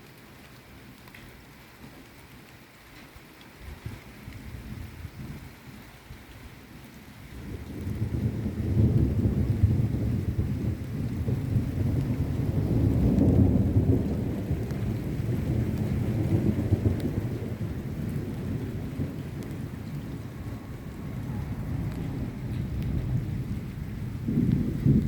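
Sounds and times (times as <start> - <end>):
steady rain hiss: 0.0 - 25.0
thunder rumbling: 7.2 - 25.0.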